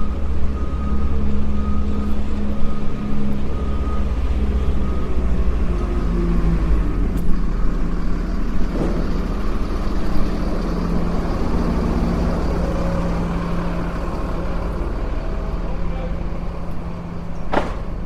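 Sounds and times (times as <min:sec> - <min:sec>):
truck engine running: 0:00.0 - 0:18.0.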